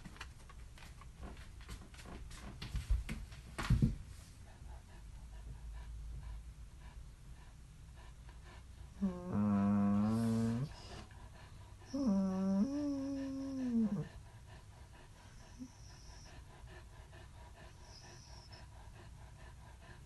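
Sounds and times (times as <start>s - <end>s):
dog groaning: 9.0s - 11.0s, 11.9s - 14.2s.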